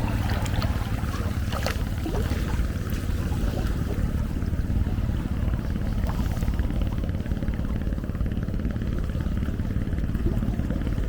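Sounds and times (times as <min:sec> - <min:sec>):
ocean surf rumbling: 0:00.0 - 0:11.0.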